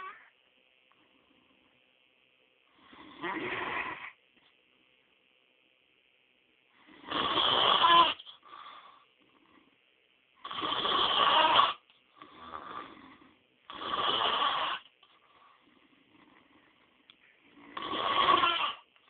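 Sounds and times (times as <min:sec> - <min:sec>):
man snoring loudly: 0:07.0 - 0:08.2, 0:10.4 - 0:13.1, 0:13.7 - 0:14.8, 0:17.7 - 0:18.8.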